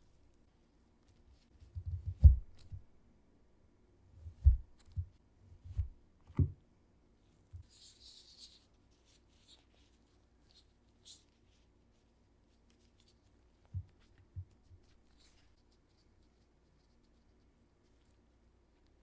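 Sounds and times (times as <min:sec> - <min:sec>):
soft rustle: 0:00.0 - 0:03.0, 0:07.1 - 0:19.0.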